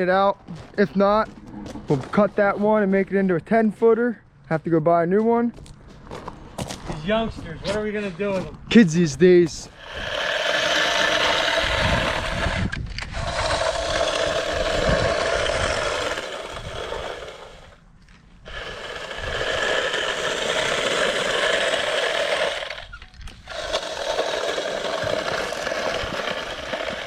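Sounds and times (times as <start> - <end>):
small motor running at high speed: 9.7 - 17.8, 18.5 - 27.0.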